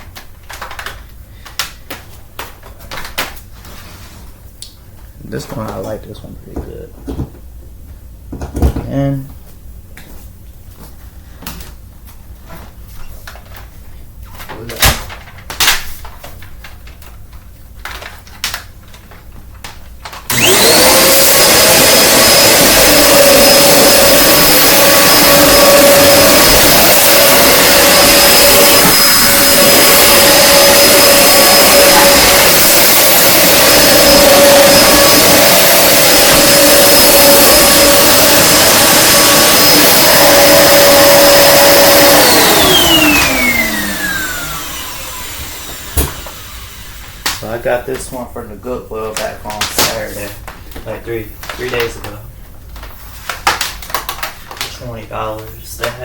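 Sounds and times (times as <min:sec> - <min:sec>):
vacuum cleaner motor whining: 0:20.1 - 0:47.4.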